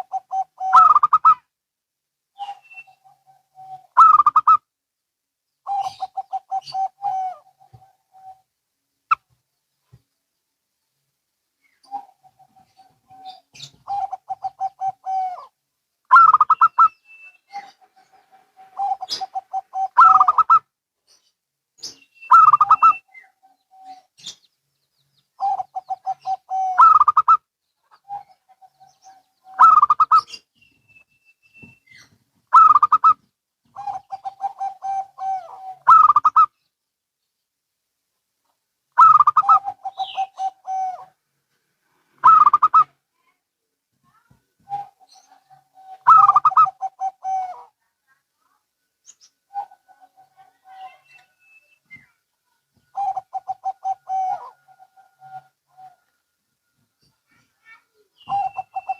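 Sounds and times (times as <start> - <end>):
doves cooing: 0.0 - 1.4, 5.7 - 8.5, 11.8 - 20.7, 22.3 - 24.3, 25.4 - 30.4, 31.6 - 36.5, 39.0 - 41.2, 42.2 - 43.0, 44.6 - 47.8, 49.5 - 51.2, 52.9 - 56.2, 58.2 - 58.9.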